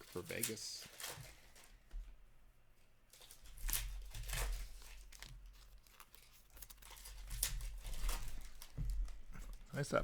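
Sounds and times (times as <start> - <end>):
wrapper crinkling: 3.2 - 8.8.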